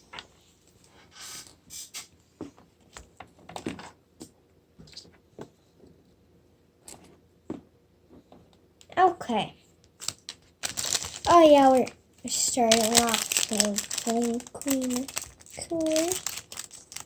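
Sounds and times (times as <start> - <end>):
plastic packaging crinkling: 10.0 - 17.0.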